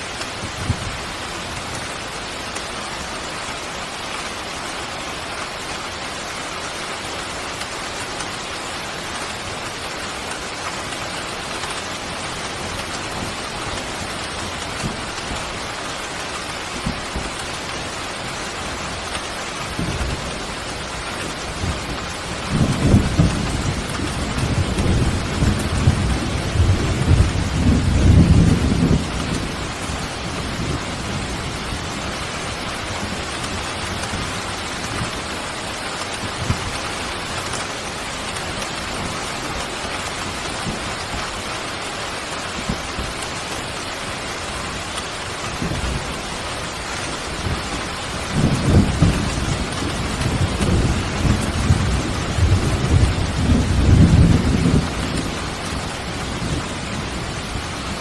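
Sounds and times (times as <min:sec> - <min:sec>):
heavy rain: 0:00.0 - 0:58.0
thunder rumbling: 0:18.2 - 0:41.8, 0:42.4 - 0:58.0.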